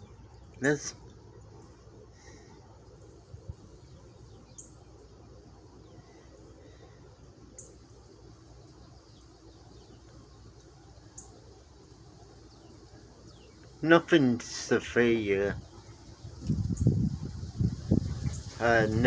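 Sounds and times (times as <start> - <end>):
high insect buzz: 0.0 - 19.0
low background noise: 0.0 - 19.0.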